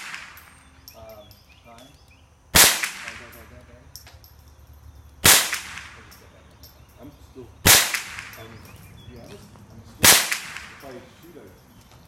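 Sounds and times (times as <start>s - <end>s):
rifle shots: 0.0s - 0.8s, 2.5s - 3.5s, 5.2s - 6.2s, 7.6s - 8.6s, 10.0s - 11.0s.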